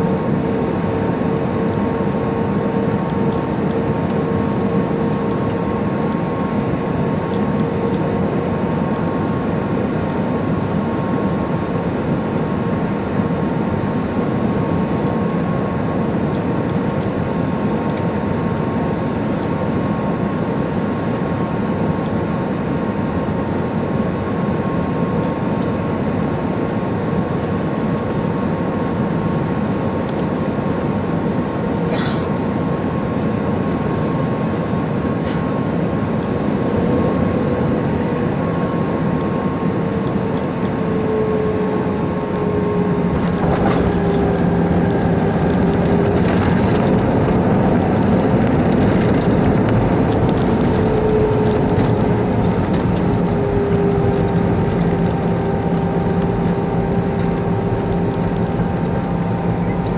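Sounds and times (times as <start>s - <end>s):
airplane cabin engine hum: 0.0s - 59.9s
thin steady whines: 36.0s - 59.9s.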